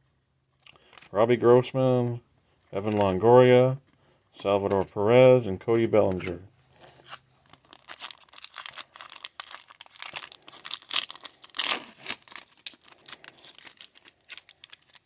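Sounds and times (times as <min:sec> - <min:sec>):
cards rustling: 0:00.5 - 0:15.0
wrapper crinkling and tearing: 0:06.9 - 0:15.0.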